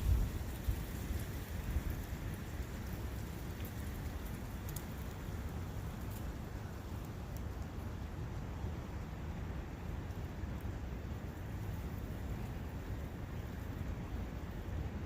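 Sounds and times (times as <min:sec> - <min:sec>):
wind: 0:00.0 - 0:15.0
faint high ticks: 0:03.5 - 0:07.8.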